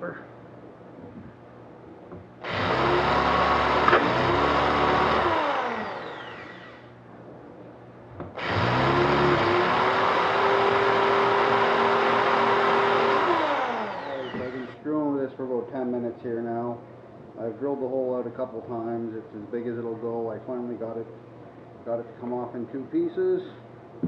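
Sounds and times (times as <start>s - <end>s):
electric drill boring into steel: 2.4s - 6.9s, 8.4s - 14.8s.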